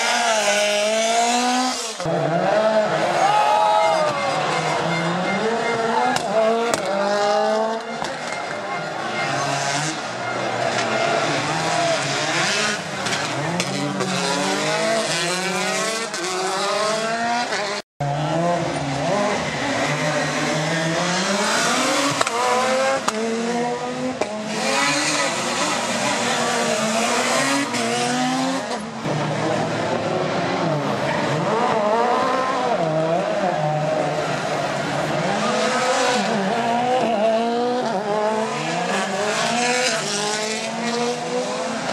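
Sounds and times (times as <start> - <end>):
rally car engines revving: 0.0 - 41.9
tyre squeal: 3.2 - 6.2.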